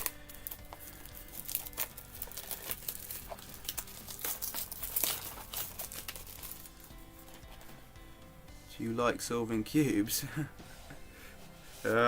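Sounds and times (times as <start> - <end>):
plastic packaging crinkling: 0.0 - 7.7.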